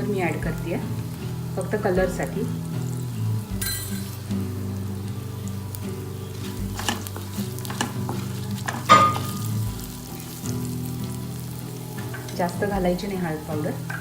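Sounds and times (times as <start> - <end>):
food sizzling in a pan: 0.0 - 14.0
spoon scraping a pan: 6.2 - 12.5.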